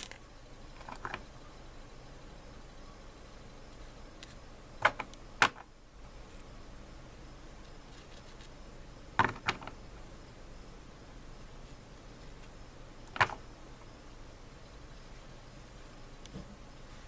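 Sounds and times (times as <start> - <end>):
faint steady hum: 0.0 - 17.0.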